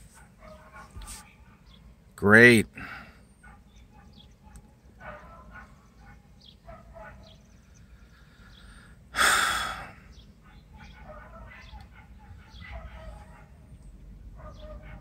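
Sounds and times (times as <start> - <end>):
small dogs yapping: 3.4 - 7.3, 10.4 - 13.6, 14.4 - 15.0
loud sigh: 9.2 - 10.0.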